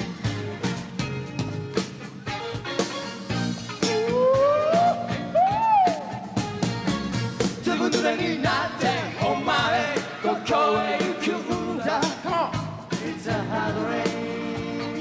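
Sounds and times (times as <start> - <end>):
drums beating: 0.0 - 14.9
live pop-rock band playing: 0.0 - 15.0
voices singing: 3.8 - 6.4, 7.4 - 15.0.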